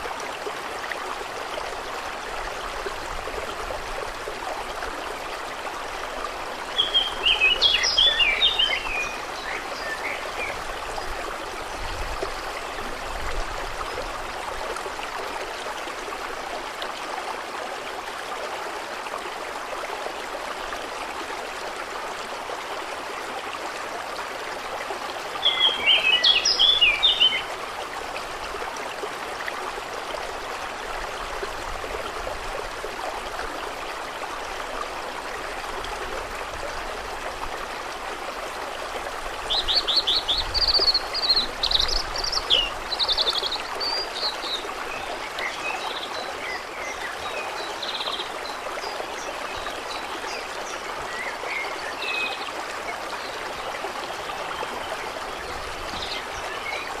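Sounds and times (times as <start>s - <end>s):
running water: 0.0s - 57.0s.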